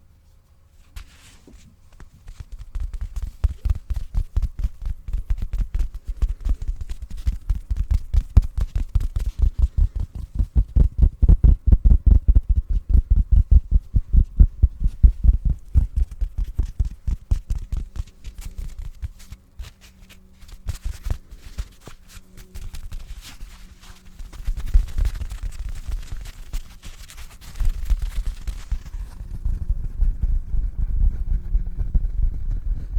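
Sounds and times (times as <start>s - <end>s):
pillow patted muffled thumps: 1.5s - 19.2s.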